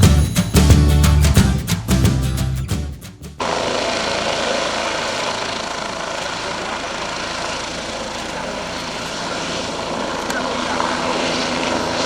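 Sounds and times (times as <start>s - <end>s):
helicopter turbine and rotor: 3.4s - 12.0s.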